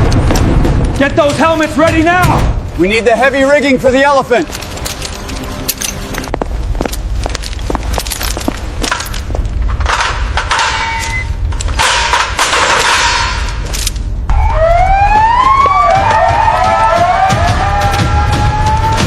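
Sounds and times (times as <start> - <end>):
emergency vehicle siren wailing: 14.3 - 19.0.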